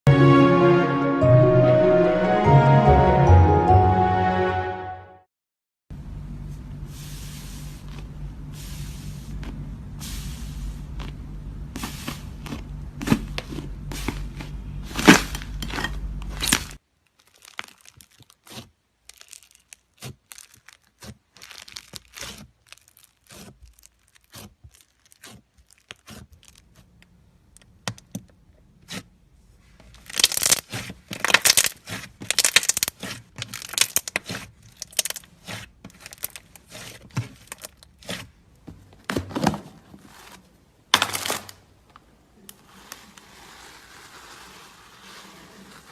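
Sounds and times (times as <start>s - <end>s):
low steady hum: 5.9s - 16.8s
slime squished sticky crackles: 16.4s - 27.0s, 30.0s - 38.3s.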